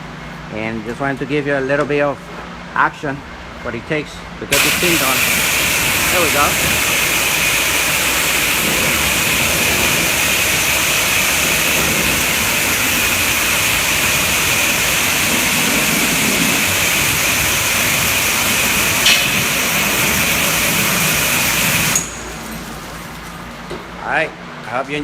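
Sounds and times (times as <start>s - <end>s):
pressure washer jet hissing: 4.5s - 23.4s.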